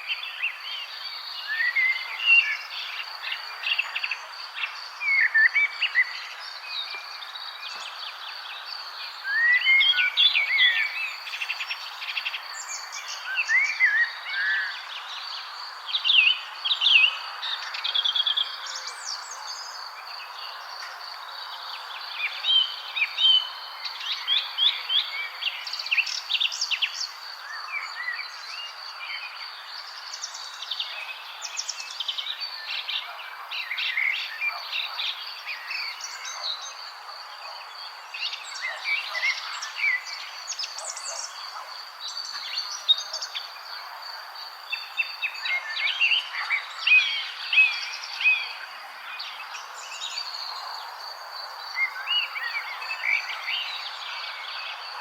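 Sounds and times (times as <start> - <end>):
songbirds chirping and trilling: 0.0 - 55.0.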